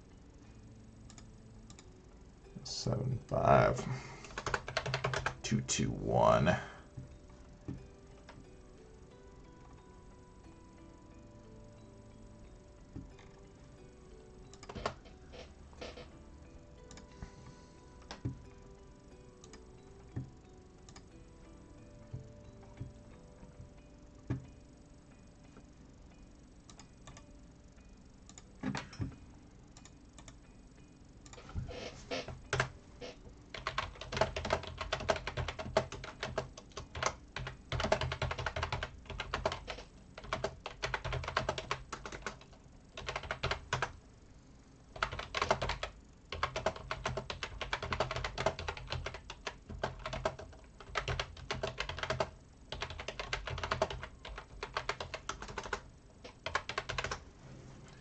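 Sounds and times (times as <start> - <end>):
typing on computer keyboard: 4.2 - 5.4, 14.5 - 15.0, 33.5 - 44.0, 45.0 - 57.2.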